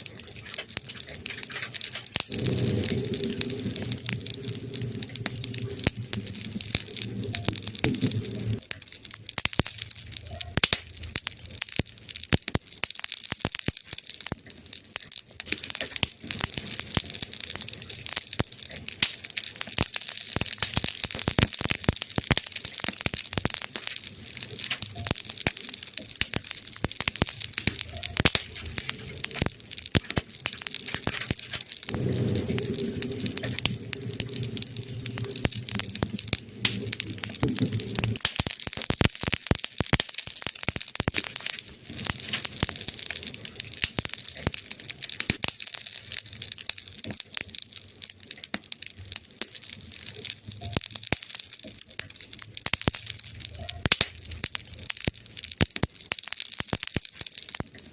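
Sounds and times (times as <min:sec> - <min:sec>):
low rumble: 0:00.0 - 0:08.7, 0:27.1 - 0:38.3
campfire wood crackling: 0:00.0 - 0:57.9.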